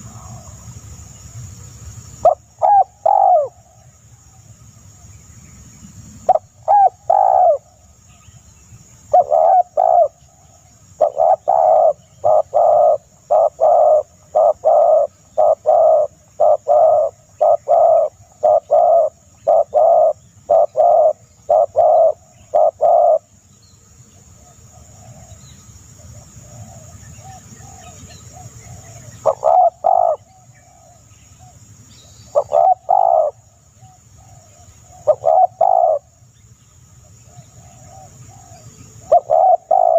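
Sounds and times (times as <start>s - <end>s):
bird cooing: 0.0s - 0.8s, 2.2s - 3.8s, 6.3s - 7.7s, 9.1s - 23.3s, 24.4s - 31.6s, 32.2s - 36.1s, 37.2s - 39.9s.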